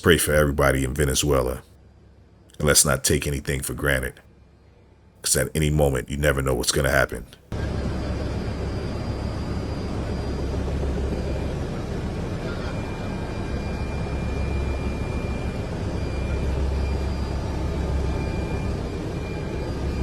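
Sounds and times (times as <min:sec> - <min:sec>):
faint high whine: 0:00.0 - 0:20.0
aircraft engine drone: 0:05.2 - 0:20.0.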